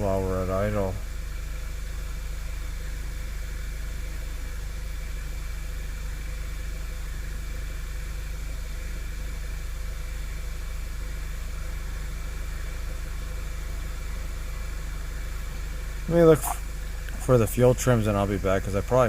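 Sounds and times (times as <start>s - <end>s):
car engine idling: 16.0s - 19.0s.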